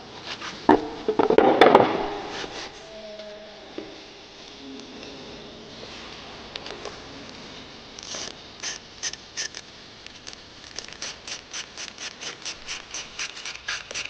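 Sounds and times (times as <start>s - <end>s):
scratchy scraping strokes: 2.1s - 3.1s, 10.9s - 14.0s.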